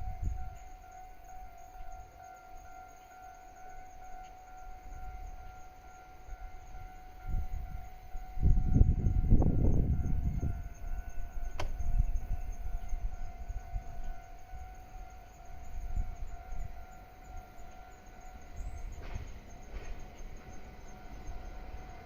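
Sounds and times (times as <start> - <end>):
level crossing warning bell: 0.0 - 22.0
sharp click: 11.6 - 11.8.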